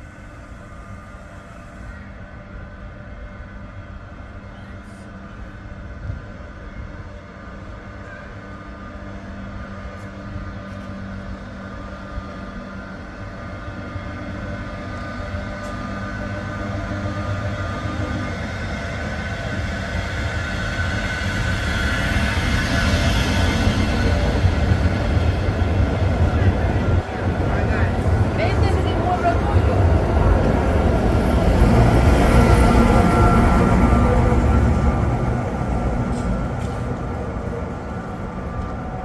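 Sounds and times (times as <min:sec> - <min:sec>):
electric tram humming and rumbling: 0:00.0 - 0:39.0.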